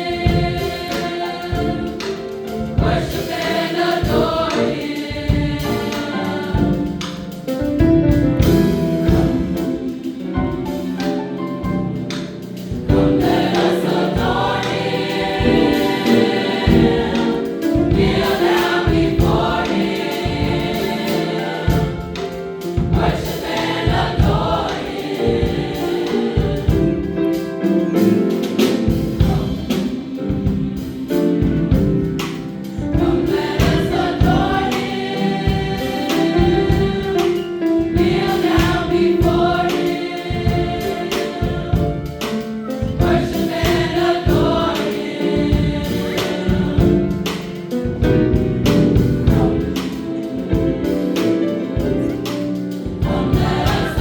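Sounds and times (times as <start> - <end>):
steady low beat: 0.0 - 27.4
choir singing: 0.0 - 54.0
instrumental accompaniment: 0.0 - 54.0.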